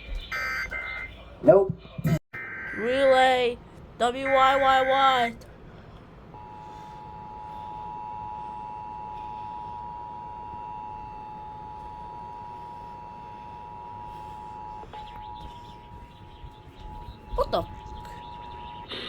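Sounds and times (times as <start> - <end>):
two-tone alert signal: 0.0 - 1.2, 2.4 - 2.9.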